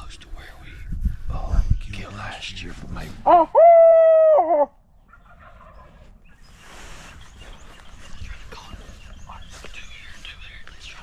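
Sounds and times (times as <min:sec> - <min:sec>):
owl hoot call: 0:03.2 - 0:04.8
distant turkey gobbling: 0:03.3 - 0:06.3.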